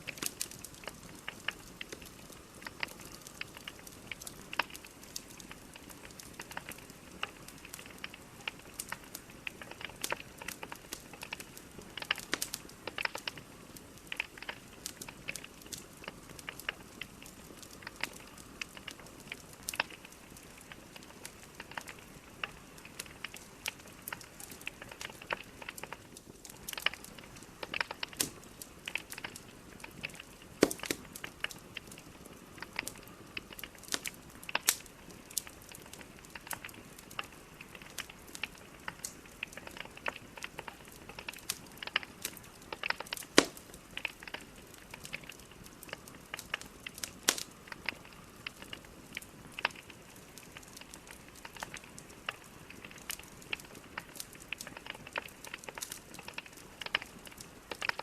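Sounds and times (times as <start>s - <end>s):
fire hissing: 0.0s - 58.0s
logs crackling and popping: 0.0s - 58.0s.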